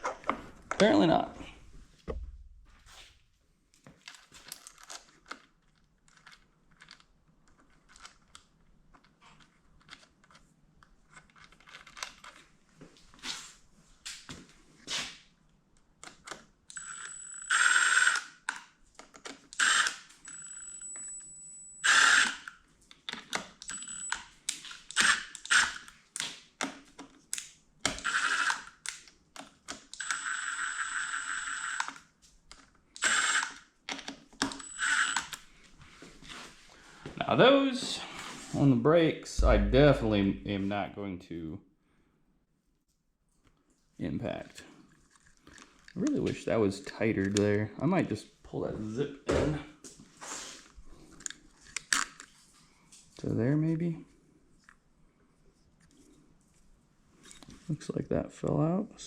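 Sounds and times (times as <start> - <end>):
cordless power tool bursts: 19.6 - 20.1, 21.8 - 22.5, 27.9 - 28.6, 33.0 - 33.6, 34.4 - 35.3.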